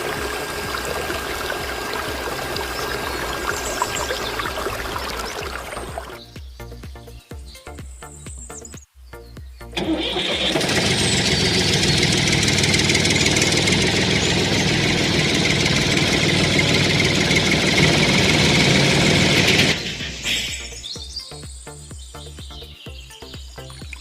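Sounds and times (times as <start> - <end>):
small motor-driven machine running: 10.4 - 19.9.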